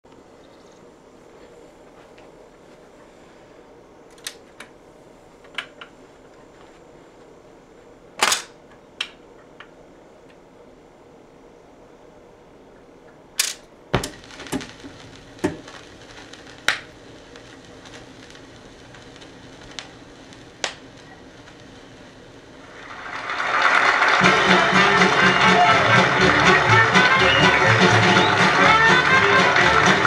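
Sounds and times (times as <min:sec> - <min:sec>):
record surface hiss: 0:00.0 - 0:30.0
vinyl clicks and pops: 0:13.4 - 0:22.6
recorded live audio: 0:13.9 - 0:30.0.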